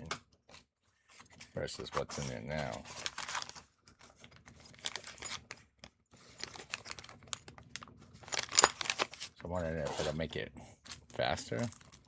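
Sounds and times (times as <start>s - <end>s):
plastic packaging crinkling: 2.6s - 9.4s, 11.0s - 12.0s.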